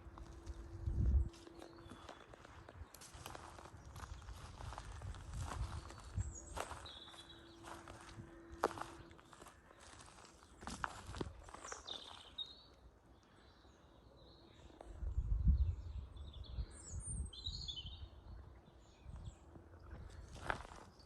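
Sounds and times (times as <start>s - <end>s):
footsteps crunching in snow: 0.0s - 12.4s, 20.2s - 21.0s
songbirds chirping and warbling: 0.0s - 21.0s.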